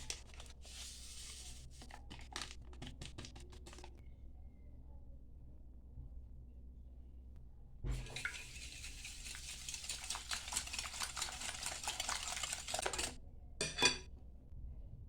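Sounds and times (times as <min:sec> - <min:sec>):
whisking batter in a bowl: 0:00.0 - 0:04.0, 0:07.9 - 0:13.2.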